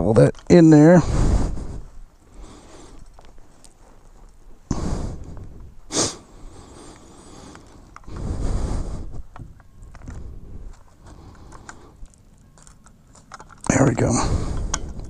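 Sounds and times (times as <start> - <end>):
person breathing: 1.0 - 4.0, 4.7 - 9.4, 10.0 - 12.2, 14.2 - 15.0
short sharp sniff: 5.9 - 7.5.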